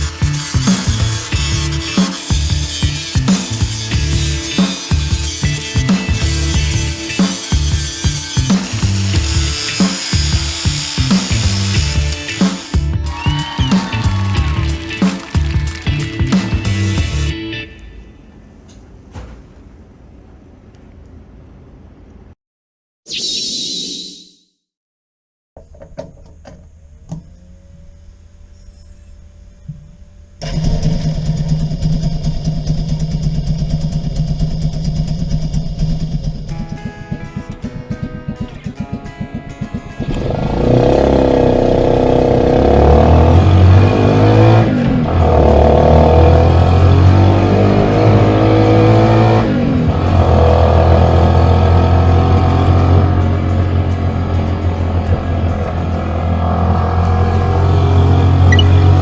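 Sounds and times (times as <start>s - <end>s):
small engine running: 0.0s - 17.4s, 39.7s - 59.0s.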